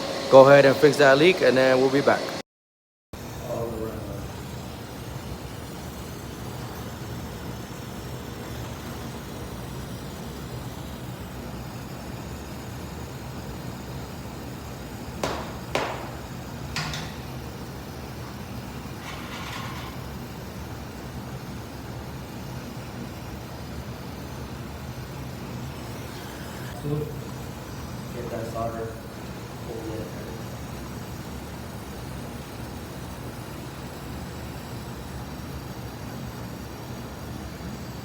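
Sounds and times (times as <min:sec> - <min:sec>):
machine humming: 0:00.0 - 0:02.4.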